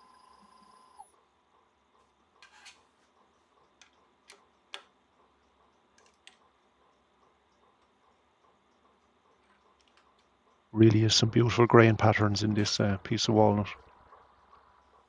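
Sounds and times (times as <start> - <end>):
faint high whine: 0.0 - 15.0
light sharp clicks and taps: 3.6 - 10.7.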